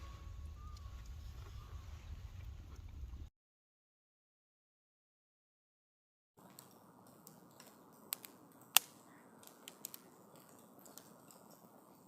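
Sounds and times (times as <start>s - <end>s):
campfire crackling: 6.4s - 12.0s.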